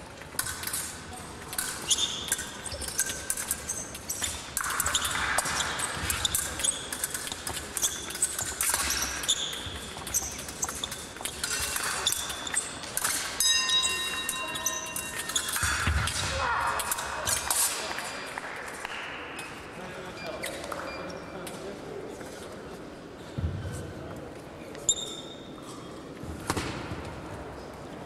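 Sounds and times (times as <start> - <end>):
fencing blades clashing: 0.0 - 18.4
shoes squeaking on floor: 0.7 - 15.9, 23.2 - 26.4.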